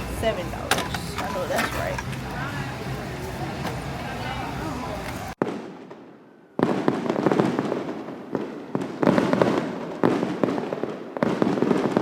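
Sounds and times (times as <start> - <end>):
fireworks crackling and popping: 5.3 - 12.0
firework bang: 5.4 - 12.0.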